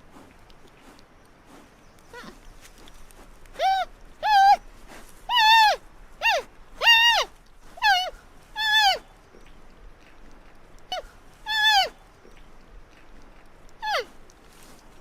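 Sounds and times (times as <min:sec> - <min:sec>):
panda cub high-pitched cries: 0:03.6 - 0:04.6, 0:05.3 - 0:09.0, 0:10.9 - 0:11.9.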